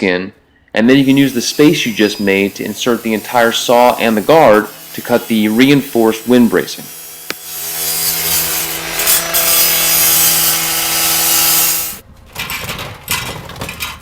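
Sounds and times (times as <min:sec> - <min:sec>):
cut-off saw cutting metal door: 0:00.9 - 0:12.0
knocks and rattles: 0:12.1 - 0:14.0.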